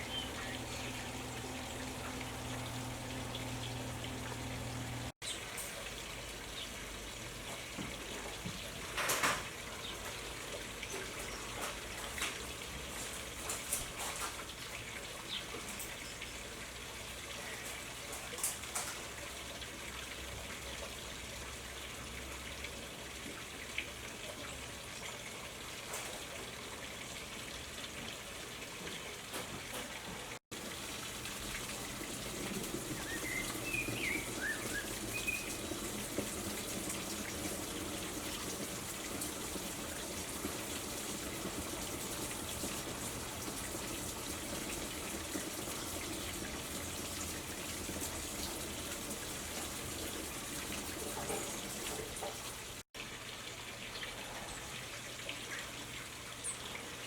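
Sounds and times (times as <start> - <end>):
hiss like trickling water: 0.0 - 57.0.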